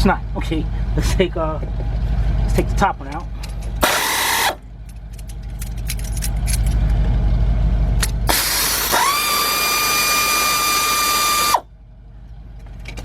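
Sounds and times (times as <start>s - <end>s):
low rumble: 0.0s - 8.8s
pneumatic air ratchet whine: 3.8s - 4.6s, 8.2s - 11.7s.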